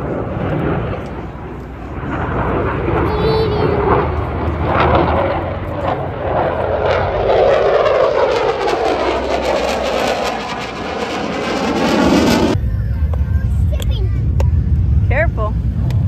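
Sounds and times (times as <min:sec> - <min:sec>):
airplane flying overhead: 0:00.0 - 0:16.0.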